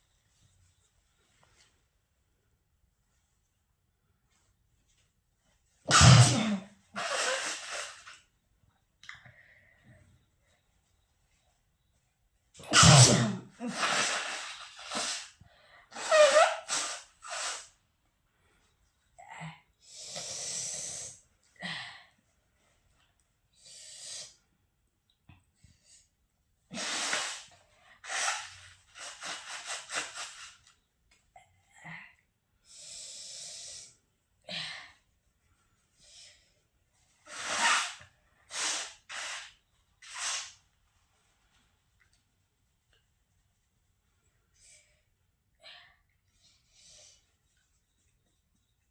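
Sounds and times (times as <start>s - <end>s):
person sneezing: 5.9s - 8.1s, 12.6s - 15.3s, 37.3s - 40.5s.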